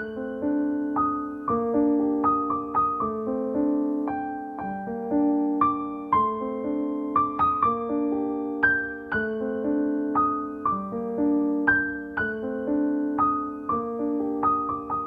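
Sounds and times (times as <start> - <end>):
slow piano melody: 0.0 - 15.0.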